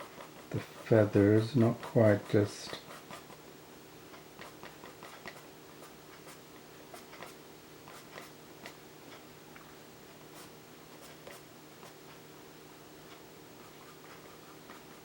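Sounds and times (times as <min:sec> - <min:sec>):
pencil scratching on paper: 0:00.0 - 0:03.4, 0:04.4 - 0:08.3
faint steady hum: 0:00.0 - 0:15.0.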